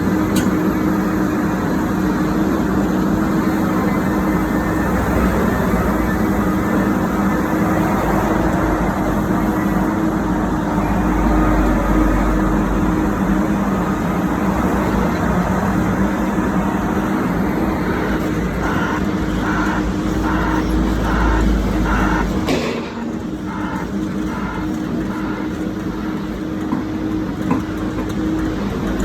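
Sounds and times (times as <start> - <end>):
diesel engine humming: 0.0 - 29.0
regular beeping: 17.0 - 26.2.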